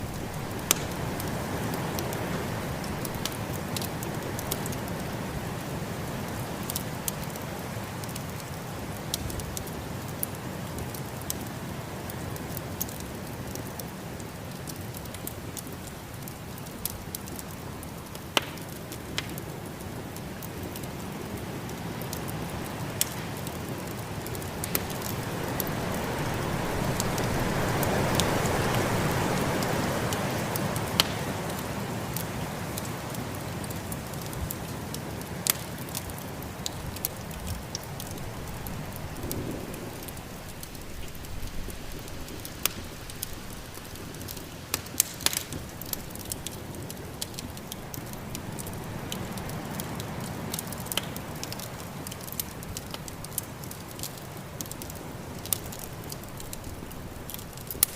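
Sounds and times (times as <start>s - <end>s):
wood fire crackling: 0.0s - 57.9s
sharp pops of fire: 0.1s - 2.2s, 14.7s - 19.8s, 29.6s - 31.6s, 32.2s - 41.2s, 41.9s - 49.9s.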